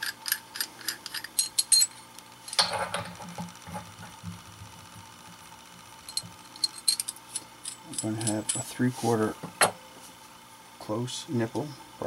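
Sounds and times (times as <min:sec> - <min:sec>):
brass fittings clinking: 0:00.0 - 0:03.2, 0:06.1 - 0:08.8.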